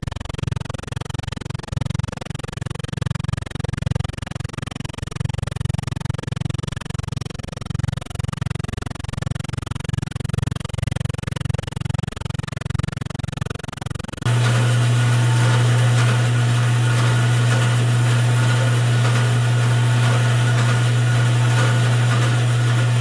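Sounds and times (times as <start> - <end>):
electric motor humming: 14.3 - 23.0.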